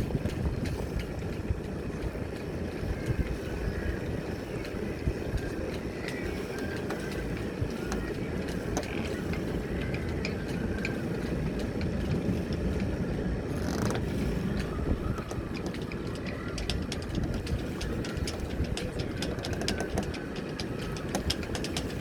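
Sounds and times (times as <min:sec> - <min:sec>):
wind and engine rumble: 0:00.0 - 0:22.0
mechanical clicks and rattles: 0:13.5 - 0:22.0.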